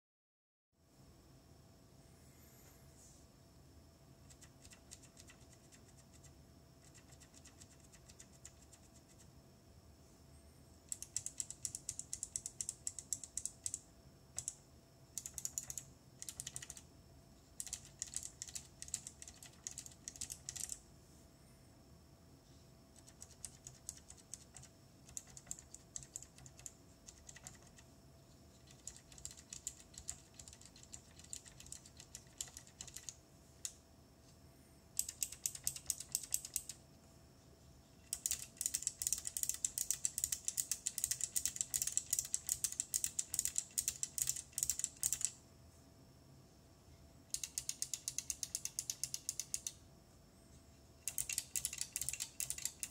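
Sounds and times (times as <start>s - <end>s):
mechanical keyboard typing: 4.2s - 9.3s, 10.9s - 16.8s, 17.6s - 20.8s, 23.0s - 27.8s, 28.5s - 33.8s, 35.0s - 36.8s, 38.1s - 45.4s, 47.3s - 49.8s, 51.0s - 52.9s.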